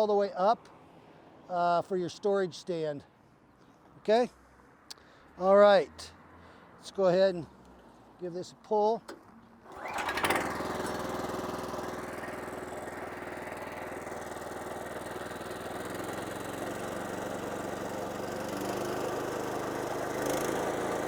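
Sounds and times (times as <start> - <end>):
recoil starter pull: 9.7 - 13.1
engine running steadily: 9.7 - 21.0.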